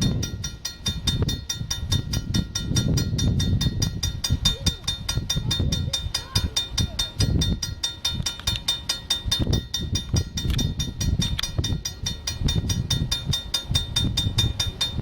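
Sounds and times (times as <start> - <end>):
crossing bell ringing: 0.0 - 15.0
train rumbling: 0.0 - 15.0.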